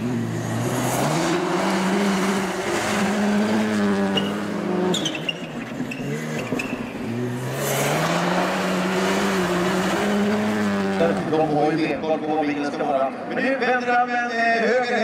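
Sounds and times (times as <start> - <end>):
rally car engine revving: 0.0 - 12.0.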